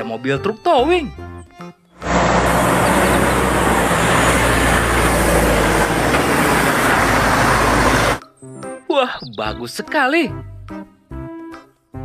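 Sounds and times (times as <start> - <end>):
road traffic noise: 2.0 - 8.2.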